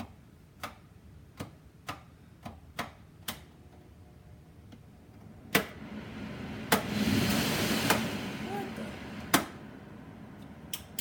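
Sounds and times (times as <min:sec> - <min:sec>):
low hum: 0:03.9 - 0:11.0
steady rushing noise: 0:05.2 - 0:11.0.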